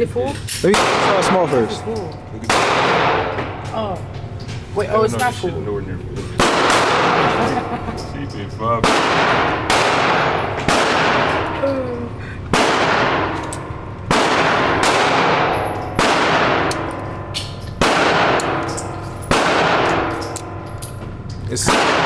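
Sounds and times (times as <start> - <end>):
gunshots echoing: 0.6 - 1.8, 2.4 - 3.7, 6.4 - 7.8, 8.8 - 11.6, 12.5 - 20.6, 21.6 - 22.0
faint distant gunshots: 6.4 - 7.3, 8.8 - 11.3, 12.5 - 13.4.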